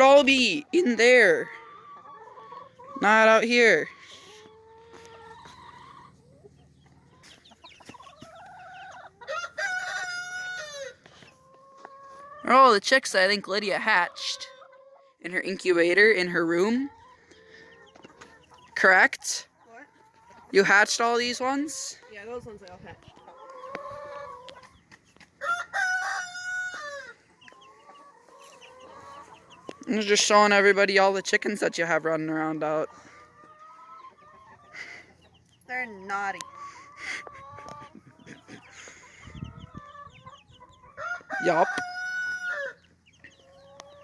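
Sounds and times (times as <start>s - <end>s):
chickens clucking: 0.0s - 44.0s
rooster crowing: 25.4s - 27.2s, 41.0s - 42.8s.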